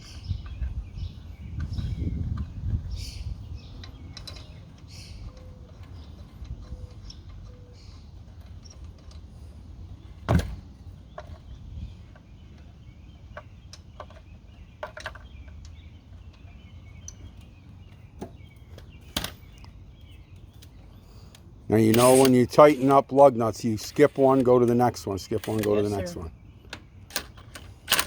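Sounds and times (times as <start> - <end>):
outdoor background noise: 0.0 - 28.0
lug nuts clicking and clinking: 21.7 - 26.1.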